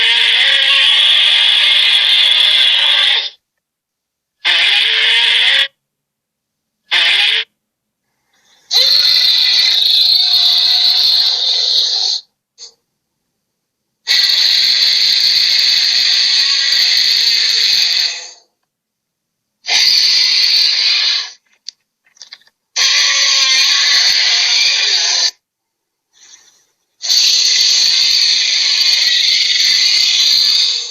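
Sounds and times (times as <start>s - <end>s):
monster hissing screeches: 0.0s - 3.4s, 4.4s - 5.8s, 6.9s - 7.5s, 8.6s - 12.3s, 14.1s - 18.4s, 19.6s - 21.4s, 22.8s - 25.4s, 26.2s - 30.9s.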